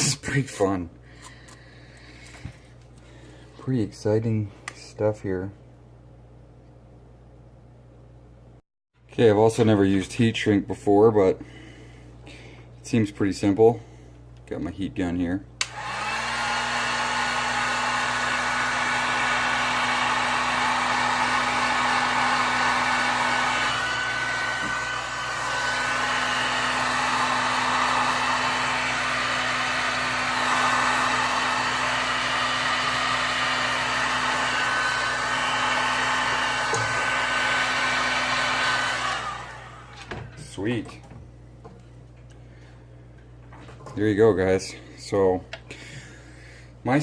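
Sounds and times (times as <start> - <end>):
heat gun blowing air: 15.6 - 40.1.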